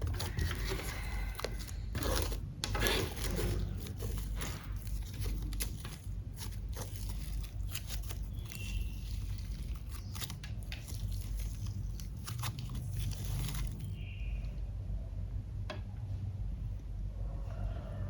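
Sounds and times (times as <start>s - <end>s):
low steady hum: 0.0s - 18.0s.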